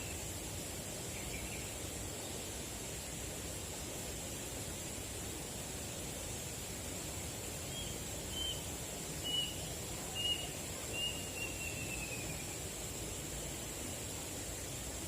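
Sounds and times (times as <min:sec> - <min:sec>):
outdoor noise hiss: 0:00.0 - 0:15.0
bird whistling: 0:09.2 - 0:09.6, 0:10.2 - 0:12.5.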